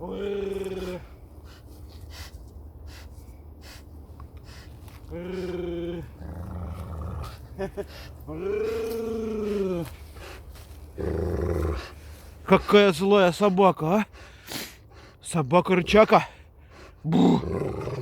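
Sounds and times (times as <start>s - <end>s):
dog growling: 11.0s - 11.9s, 17.1s - 18.0s.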